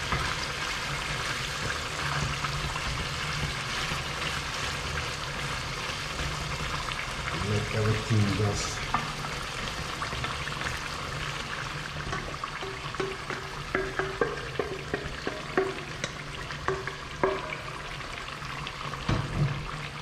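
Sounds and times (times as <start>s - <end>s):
chicken frying sizzle: 0.0s - 20.0s
oil popping: 8.9s - 20.0s.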